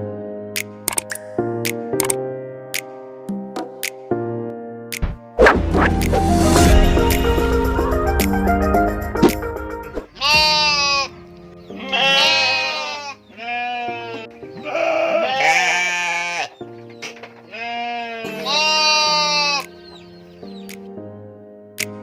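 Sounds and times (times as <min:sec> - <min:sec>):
background music: 0:00.0 - 0:22.0
animal wavering cries: 0:11.8 - 0:16.6, 0:17.5 - 0:19.8.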